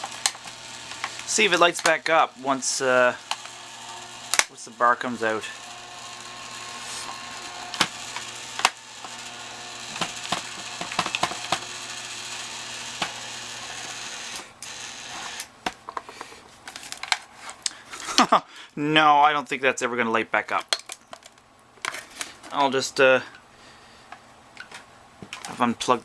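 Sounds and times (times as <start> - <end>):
motor humming: 0.0 - 15.6
clicks and cracks of broken machine: 0.0 - 16.1, 20.6 - 22.6
scattered clicks and rattles: 0.0 - 17.3.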